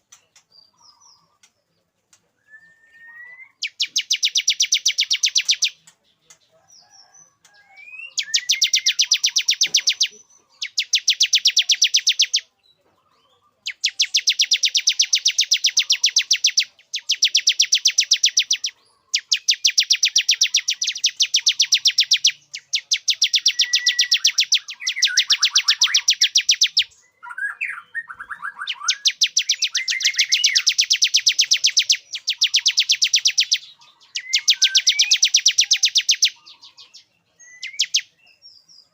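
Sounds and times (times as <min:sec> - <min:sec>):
soft bird chirps: 0:00.0 - 0:38.9
bird song rapid high notes: 0:02.6 - 0:06.0, 0:06.8 - 0:38.9.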